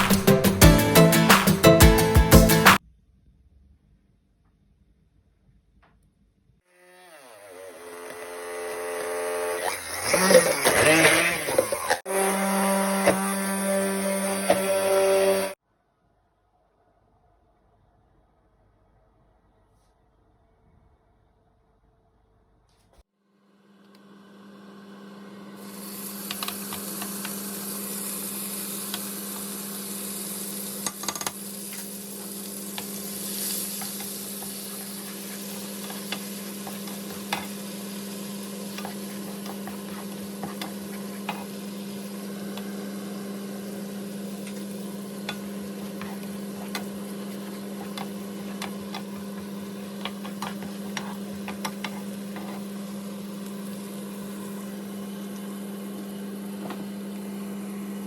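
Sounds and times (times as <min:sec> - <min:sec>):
food sizzling in hot oil: 0:25.6 - 0:55.6
utensil scraping a pan: 0:45.8 - 0:52.7.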